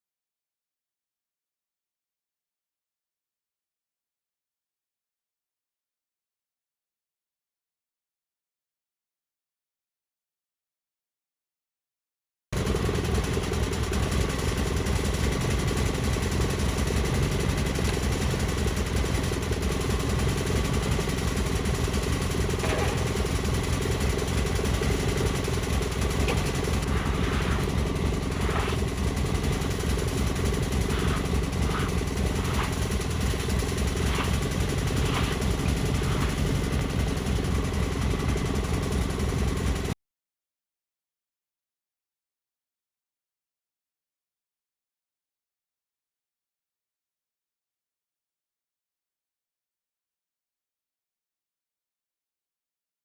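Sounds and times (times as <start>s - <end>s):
sawmill engine running: 12.6s - 40.0s.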